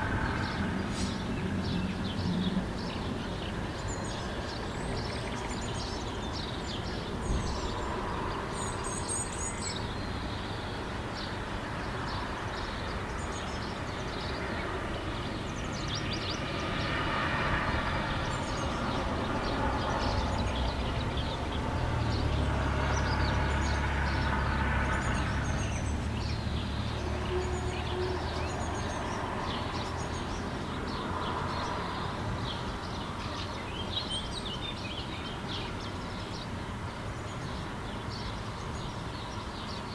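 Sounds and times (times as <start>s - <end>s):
heavy vehicle rumbling past: 0.0s - 9.5s, 10.1s - 35.0s
small birds chirping: 0.4s - 39.9s.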